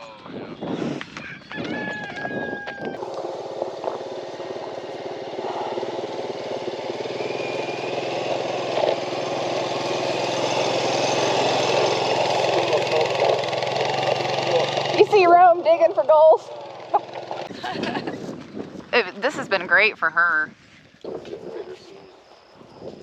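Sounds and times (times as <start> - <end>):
engine running steadily: 3.0 - 18.0.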